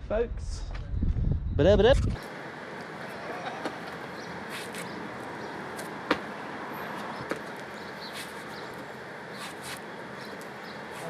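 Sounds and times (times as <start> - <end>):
outdoor background hum: 0.0 - 11.0
shoes striking a wall: 5.8 - 6.4, 7.1 - 7.6.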